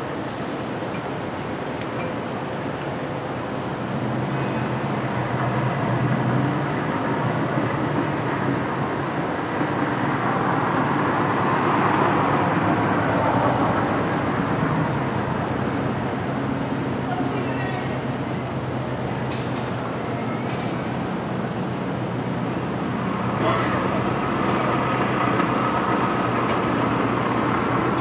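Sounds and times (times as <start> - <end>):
traffic rumble: 0.0 - 28.0
motor vehicle engine: 20.7 - 28.0.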